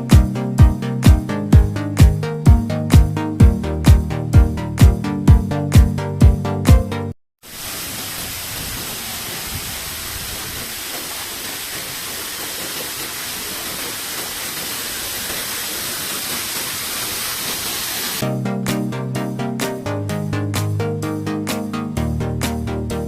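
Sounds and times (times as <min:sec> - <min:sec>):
background music with beat: 0:00.0 - 0:07.2, 0:18.2 - 0:23.0.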